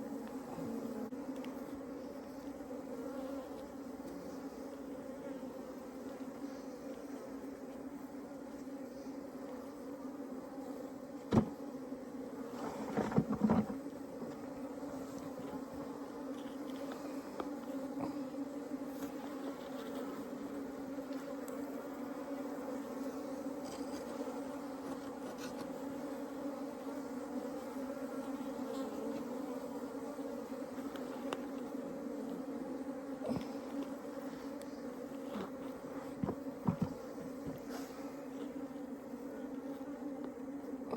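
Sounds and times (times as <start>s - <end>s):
honeybees buzzing: 0.0s - 40.9s.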